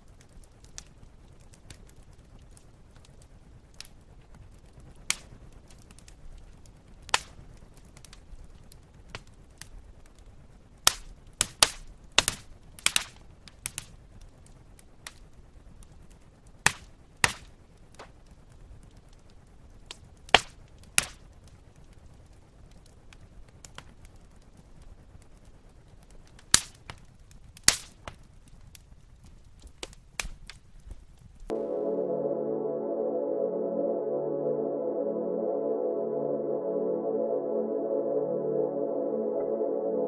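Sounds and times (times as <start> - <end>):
log fire crackling: 0.0 - 31.6.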